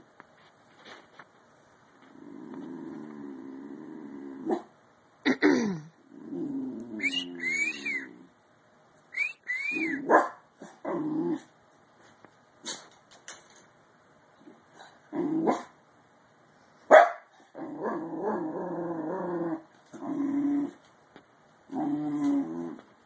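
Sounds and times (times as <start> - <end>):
puppy whining: 6.8 - 8.3, 9.2 - 10.1
puppy yawning: 6.9 - 8.2, 9.2 - 10.0.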